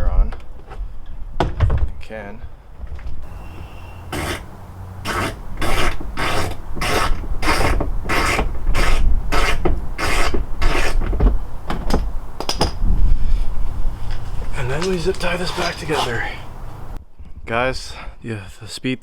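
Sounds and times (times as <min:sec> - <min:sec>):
rasping rubbing strokes on car trim: 0:03.2 - 0:11.0, 0:15.1 - 0:16.6.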